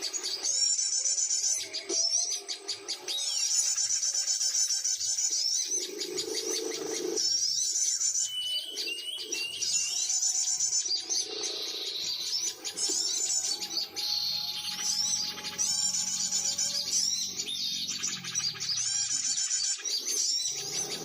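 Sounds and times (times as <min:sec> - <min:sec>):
small birds chirping and trilling: 0:00.0 - 0:21.0.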